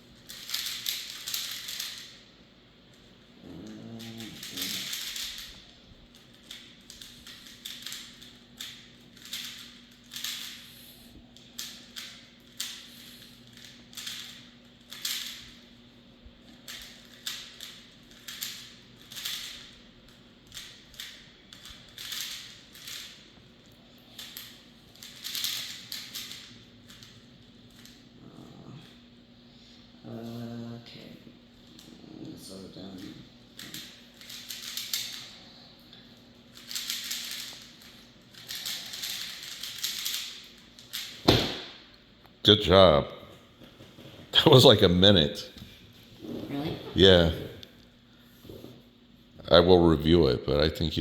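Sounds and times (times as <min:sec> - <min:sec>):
puzzle cube clicking and rattling: 0:00.2 - 0:02.1, 0:03.9 - 0:05.6, 0:06.3 - 0:10.6, 0:13.5 - 0:15.4, 0:16.7 - 0:19.8, 0:20.4 - 0:23.2, 0:24.1 - 0:27.1, 0:33.6 - 0:35.2, 0:36.5 - 0:41.2.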